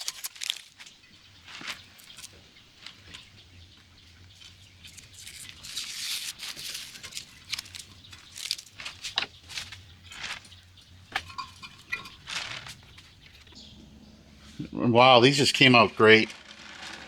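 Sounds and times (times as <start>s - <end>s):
paper crinkling and tearing: 0.0s - 0.9s, 4.4s - 13.5s, 15.6s - 17.0s
tape and paper peeling off: 0.0s - 2.4s, 4.4s - 13.5s, 16.0s - 17.0s.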